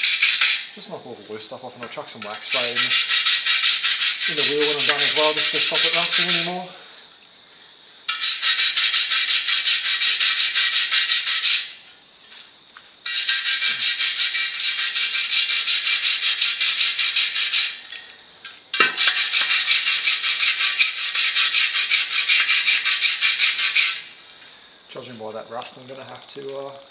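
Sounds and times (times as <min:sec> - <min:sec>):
wire brush scrubbing rust: 0:02.2 - 0:06.7, 0:08.1 - 0:11.8, 0:13.0 - 0:18.0, 0:18.8 - 0:24.1.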